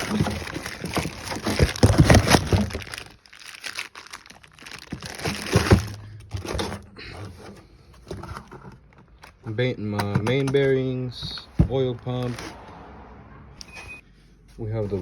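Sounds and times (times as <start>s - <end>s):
plastic packaging crinkling: 0.0s - 6.8s
light clatter of parts: 5.0s - 12.6s.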